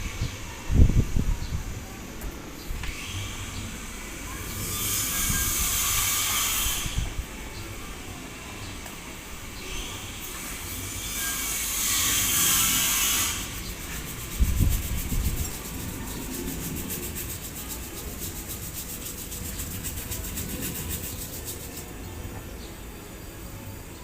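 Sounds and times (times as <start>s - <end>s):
rhythmic scraping on metal: 3.0s - 7.2s, 9.6s - 22.2s
loud hiss: 9.8s - 21.9s.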